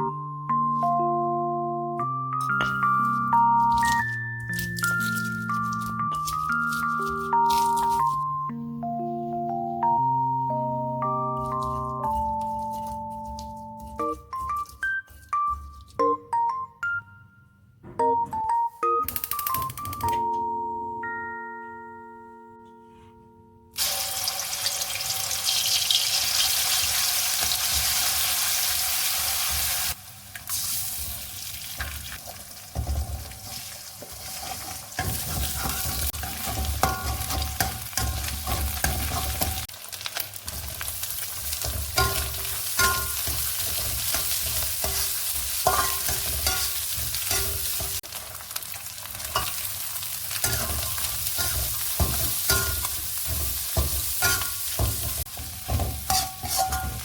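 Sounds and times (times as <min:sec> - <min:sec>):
food sizzling in a hot pan: 0:23.8 - 0:57.0
spatula scraping and clinking pan: 0:32.8 - 0:39.7, 0:40.5 - 0:48.1, 0:49.1 - 0:49.7, 0:50.3 - 0:57.0.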